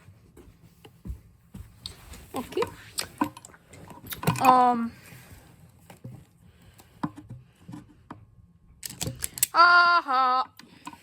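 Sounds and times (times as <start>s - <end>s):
clicks of objects being handled: 8.8s - 9.6s
person humming: 9.5s - 10.6s.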